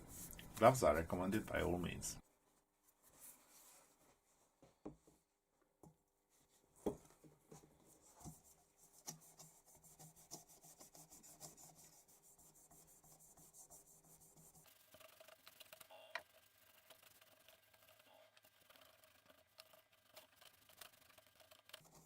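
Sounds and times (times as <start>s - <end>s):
hand rubbing polish on brass: 8.4s - 14.7s.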